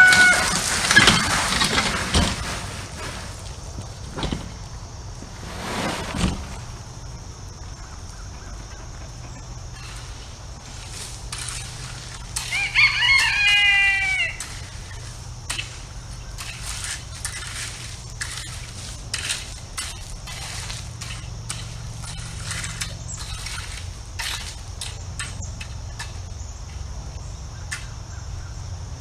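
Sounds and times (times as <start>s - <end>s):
rooster crowing: 0.0s - 1.3s, 12.4s - 15.0s
scraping crunch: 0.0s - 28.2s.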